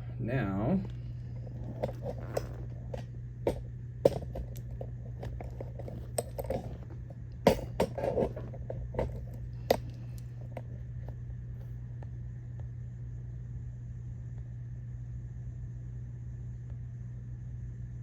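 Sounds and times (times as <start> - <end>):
metal lock parts clicking: 1.4 - 10.7.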